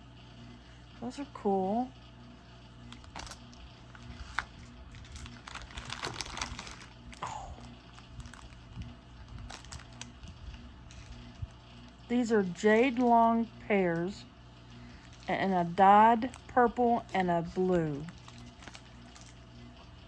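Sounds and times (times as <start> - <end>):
plastic bags crinkling: 2.9 - 20.0.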